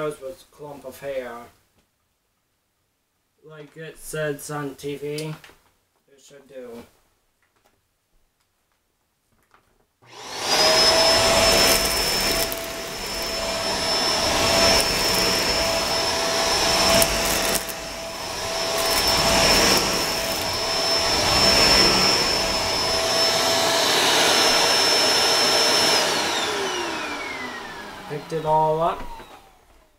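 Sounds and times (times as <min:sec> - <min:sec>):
vacuum cleaner motor whining: 0:10.0 - 0:29.9.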